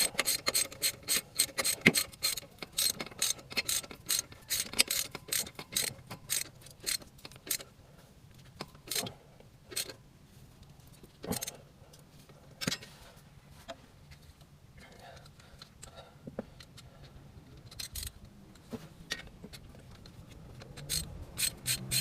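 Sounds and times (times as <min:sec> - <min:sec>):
ratchet wrench clicking: 0:00.0 - 0:07.6, 0:09.7 - 0:09.9, 0:17.6 - 0:18.2, 0:20.6 - 0:22.0.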